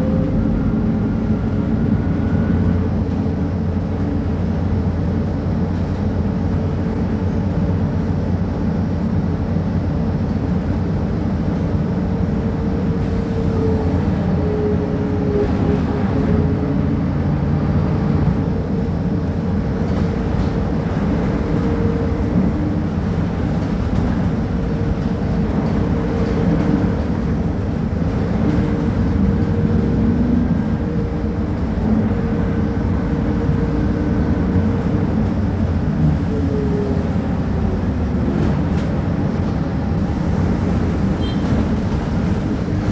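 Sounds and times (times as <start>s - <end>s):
bus diesel engine rumbling: 0.0s - 42.9s.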